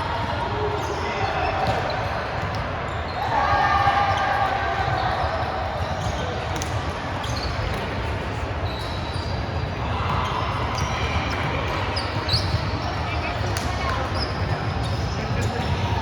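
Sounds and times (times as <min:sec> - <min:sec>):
shoe squeaks on gym floor: 0:00.8 - 0:15.9.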